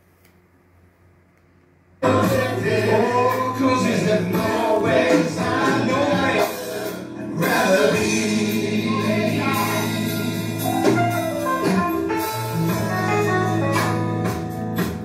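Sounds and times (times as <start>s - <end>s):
people singing slow song: 2.0s - 11.2s
live gospel band: 2.0s - 15.0s.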